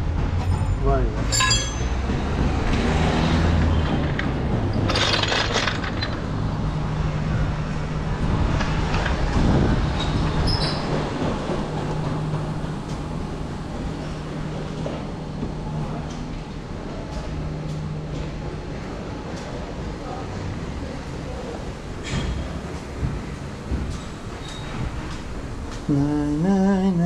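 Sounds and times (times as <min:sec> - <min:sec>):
metallic clinks: 0:00.5 - 0:02.0.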